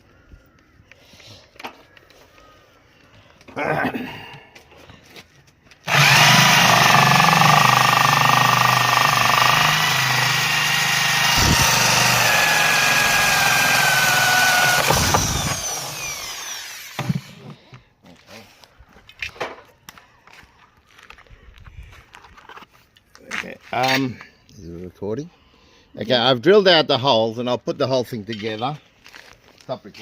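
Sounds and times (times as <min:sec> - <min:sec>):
electric drill boring: 0:05.9 - 0:17.4.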